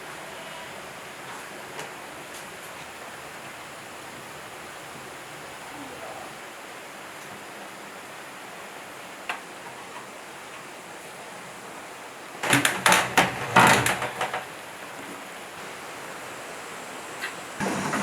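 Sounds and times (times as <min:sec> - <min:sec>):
steady background hiss: 0:00.0 - 0:18.0
loud clattering knocks: 0:12.4 - 0:14.9, 0:17.6 - 0:18.0.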